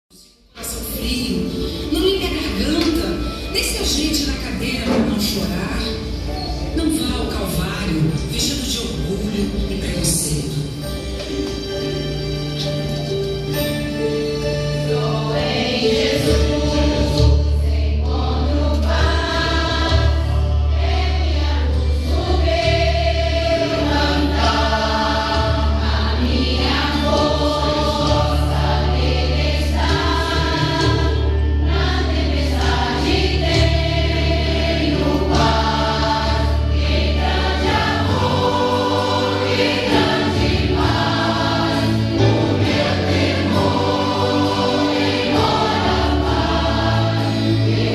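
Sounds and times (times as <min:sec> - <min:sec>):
choir singing gospel song: 0:14.4 - 0:47.9.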